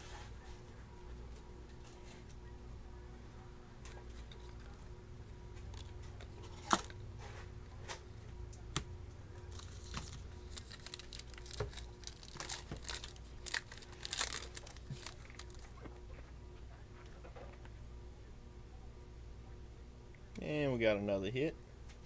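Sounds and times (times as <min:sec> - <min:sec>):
card pack wrappers tearing: 0:09.5 - 0:15.7.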